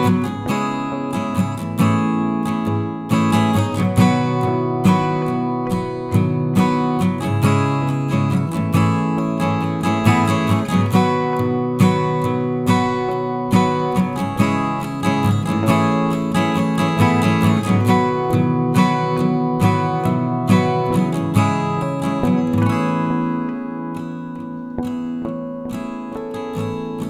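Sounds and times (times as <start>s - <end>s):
acoustic guitar music: 0.0s - 27.0s.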